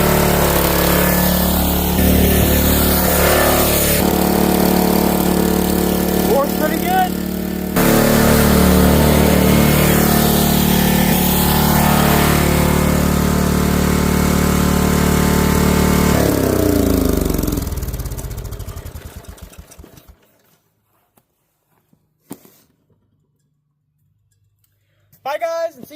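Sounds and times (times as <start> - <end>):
small engine running: 0.0 - 20.4.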